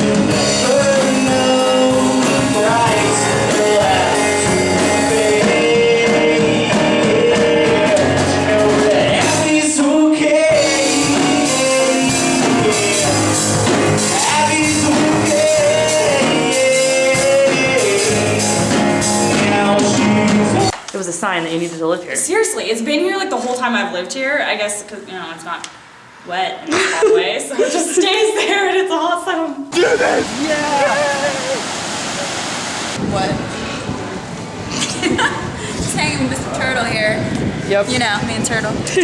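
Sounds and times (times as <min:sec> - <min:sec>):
rock song with singing: 0:00.0 - 0:20.8.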